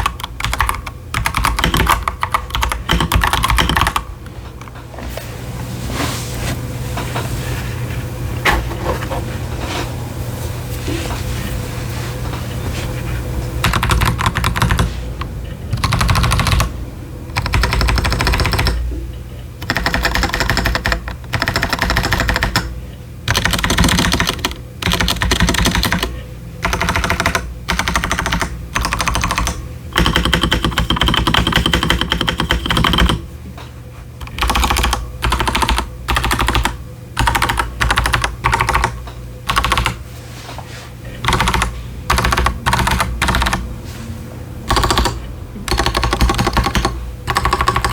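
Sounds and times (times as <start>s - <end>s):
mechanical keyboard typing: 0.0s - 4.0s, 13.6s - 15.0s, 15.7s - 16.7s, 17.3s - 18.8s, 19.6s - 22.7s, 23.3s - 33.2s, 34.2s - 40.0s, 41.2s - 43.6s, 44.7s - 47.9s.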